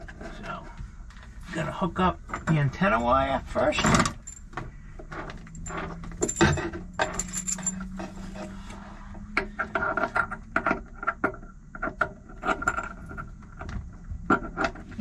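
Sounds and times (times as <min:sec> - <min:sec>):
faint low hum: 0:00.0 - 0:15.0
metallic clicks and rattles: 0:05.1 - 0:08.5.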